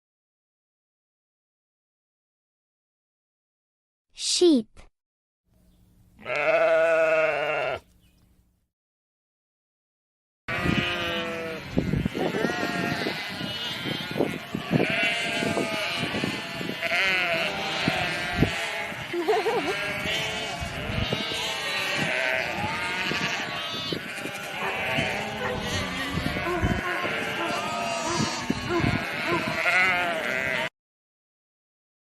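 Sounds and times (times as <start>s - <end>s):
sheep bleating: 6.2s - 7.9s, 10.5s - 30.7s.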